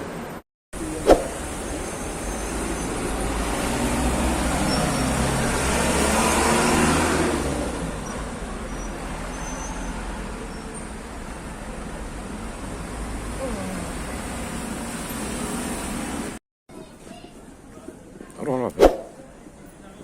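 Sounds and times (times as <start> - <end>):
car passing by: 0.8 - 11.0, 12.5 - 16.4.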